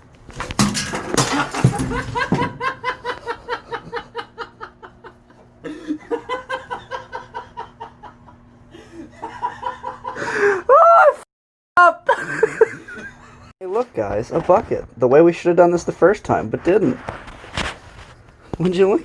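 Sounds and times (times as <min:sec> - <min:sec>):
person laughing hard: 0:01.3 - 0:11.1, 0:12.0 - 0:13.1.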